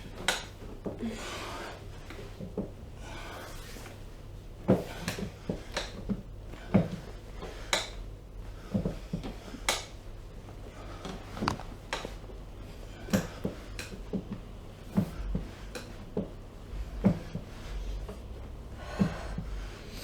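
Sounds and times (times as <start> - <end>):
sharp clicks and knocks from body: 11.1 - 12.2
person breathing: 18.7 - 20.0.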